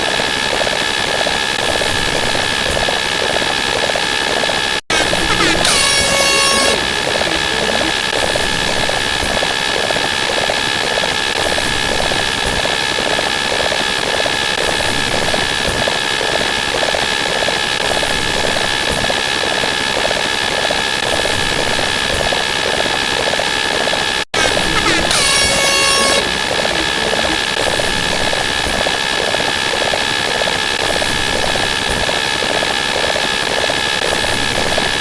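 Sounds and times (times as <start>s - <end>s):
pulsing engine-like drone: 4.9s - 8.1s, 24.4s - 27.6s.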